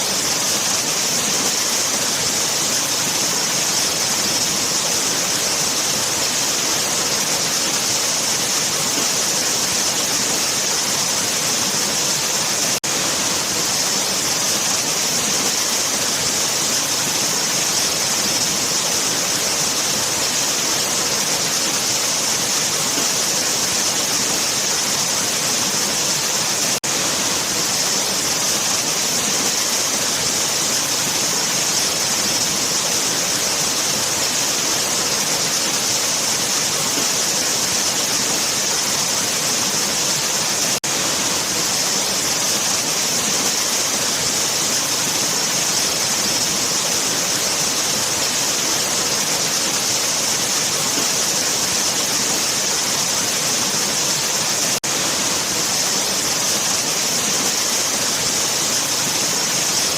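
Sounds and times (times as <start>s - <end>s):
waterfall roaring: 0.0s - 59.9s.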